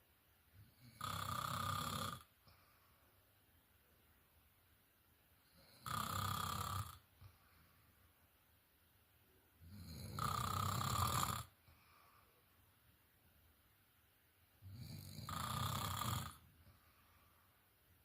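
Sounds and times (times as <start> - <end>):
quiet breathing: 0.0 - 4.1, 5.3 - 8.4, 9.3 - 13.0, 14.6 - 18.0
person snoring: 0.6 - 2.3, 5.6 - 7.0, 9.7 - 11.6, 14.6 - 16.4.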